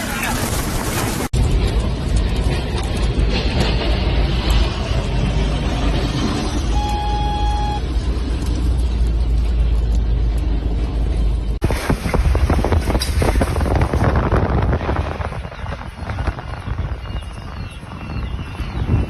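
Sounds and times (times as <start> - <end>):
harsh crackling with ticks: 0.0 - 7.0, 7.8 - 11.6
storm wind on microphone: 0.0 - 19.0
single-pitched tone: 6.7 - 7.8.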